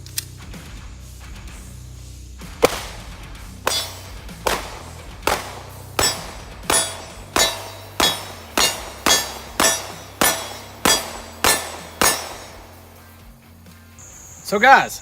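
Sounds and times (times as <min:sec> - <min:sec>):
pistol shots with metallic ring: 0:02.6 - 0:13.3.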